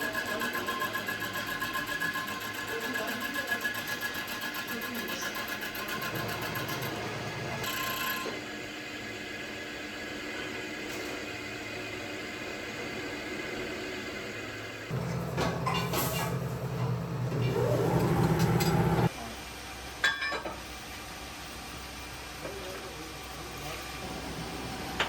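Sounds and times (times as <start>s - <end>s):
workshop machinery humming: 5.5s - 8.4s, 12.4s - 19.1s, 24.0s - 25.0s.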